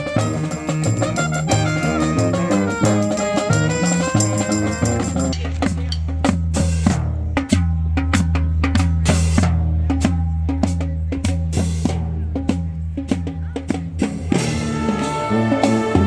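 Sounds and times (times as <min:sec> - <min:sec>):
horns playing held notes: 0:00.0 - 0:05.4, 0:14.5 - 0:16.0
drums keeping a steady beat: 0:00.0 - 0:16.0.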